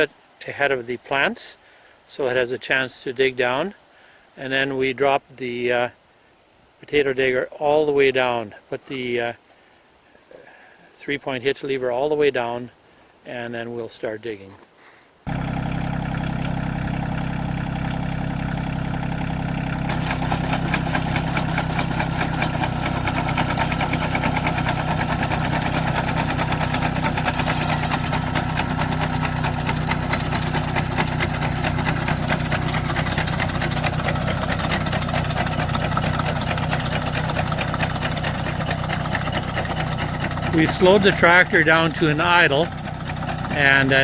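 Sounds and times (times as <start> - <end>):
tractor diesel engine running: 15.3 - 44.0
metallic rattle of digger: 19.8 - 44.0.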